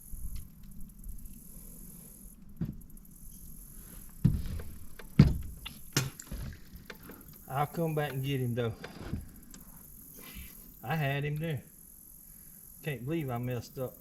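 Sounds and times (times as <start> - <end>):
low steady hum: 0.0 - 14.0
knocks and thumps on a boat: 2.6 - 2.9, 4.1 - 9.7.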